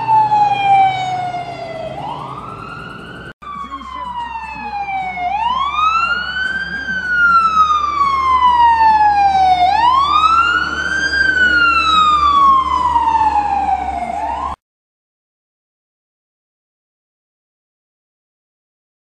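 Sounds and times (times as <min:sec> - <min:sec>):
emergency vehicle siren wailing: 0:00.0 - 0:14.6.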